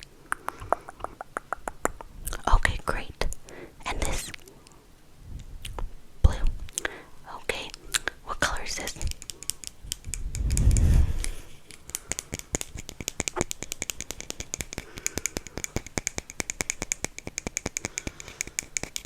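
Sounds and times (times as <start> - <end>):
tapping on hard object: 12.0 - 19.0.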